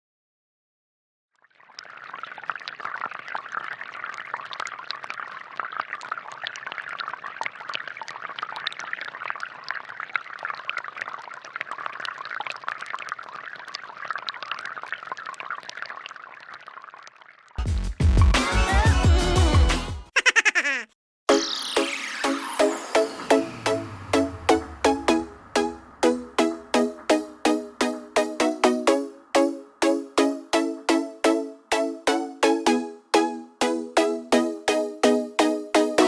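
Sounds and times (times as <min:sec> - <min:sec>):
water pouring and splashing: 0:01.4 - 0:17.6.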